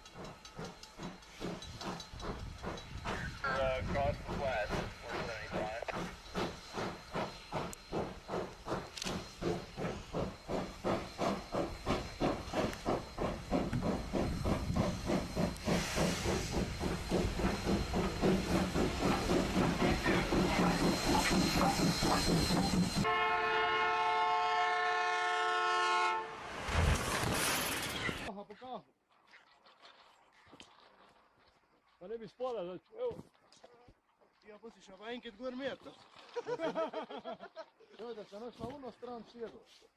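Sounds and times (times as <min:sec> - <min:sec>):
steam hissing: 0:00.0 - 0:23.8, 0:26.3 - 0:28.3
steam locomotive chuffing: 0:00.0 - 0:28.3.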